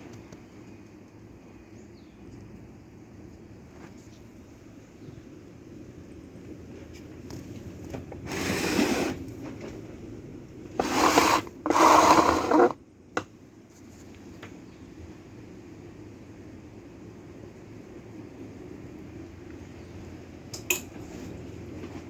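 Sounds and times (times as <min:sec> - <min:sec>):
harsh scraping from pump: 0:08.2 - 0:09.5, 0:10.7 - 0:12.8
well pump humming: 0:10.7 - 0:12.8.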